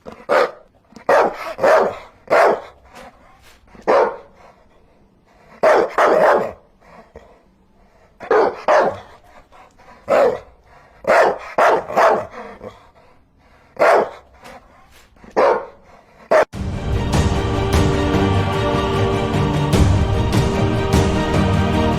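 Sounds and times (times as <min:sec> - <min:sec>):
dog barking: 0:00.0 - 0:03.1, 0:03.7 - 0:04.6, 0:05.4 - 0:07.4, 0:08.2 - 0:09.4, 0:10.0 - 0:12.9, 0:13.7 - 0:14.6, 0:15.2 - 0:16.5
music: 0:16.6 - 0:21.9.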